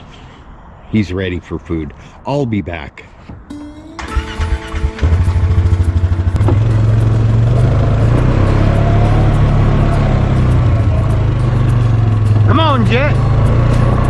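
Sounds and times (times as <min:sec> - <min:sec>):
vehicle engine starting: 0:03.8 - 0:14.0.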